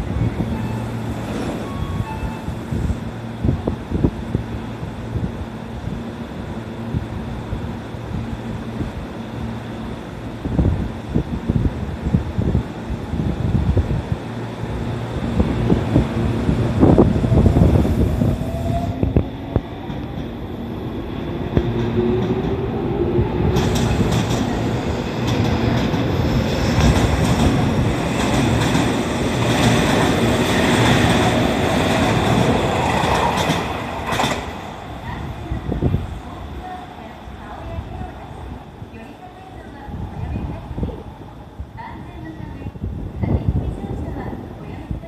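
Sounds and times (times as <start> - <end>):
train wheels clattering: 23.5 - 34.7.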